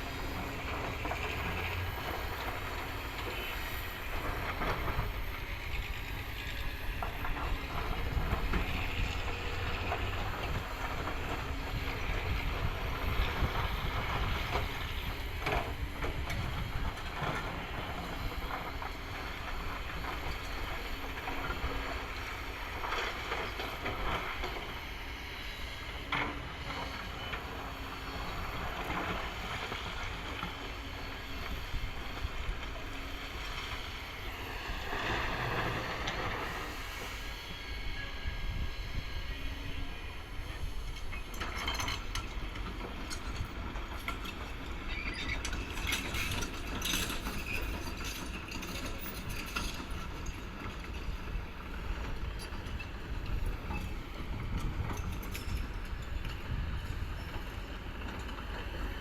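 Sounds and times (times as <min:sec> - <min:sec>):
excavator diesel engine: 0:00.0 - 0:59.0.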